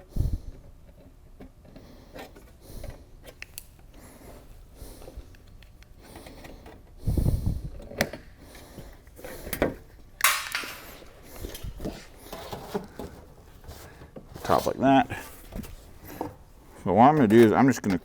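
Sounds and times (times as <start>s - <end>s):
metallic clicks and knocks: 10.2s - 11.7s.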